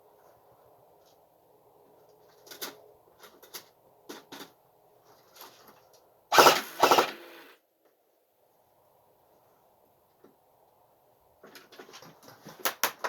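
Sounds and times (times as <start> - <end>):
airsoft gun rapid clicking bursts: 6.3 - 7.5.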